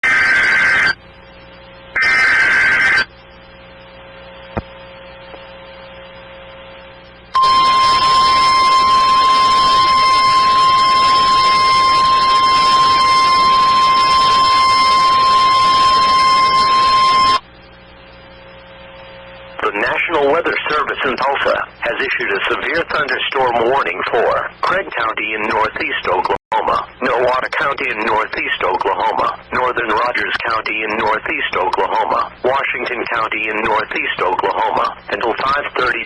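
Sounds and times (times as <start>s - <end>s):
steady piercing alarm tone: 0.0s - 1.0s, 2.0s - 3.1s, 7.3s - 17.5s
faint hum: 0.0s - 36.0s
shrill digital data bursts: 2.0s - 3.1s, 7.4s - 17.4s.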